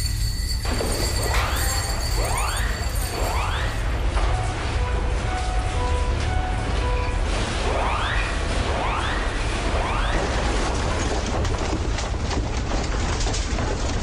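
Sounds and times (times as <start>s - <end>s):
rattling and crashing: 10.2s - 14.0s
dense clatter of sharp rattles: 10.4s - 14.0s.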